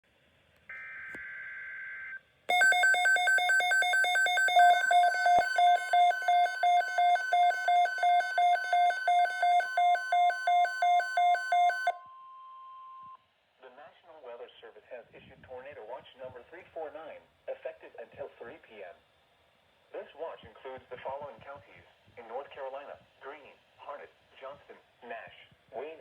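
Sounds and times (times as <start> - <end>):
two-tone electronic alarm beeping: 2.5 - 13.2.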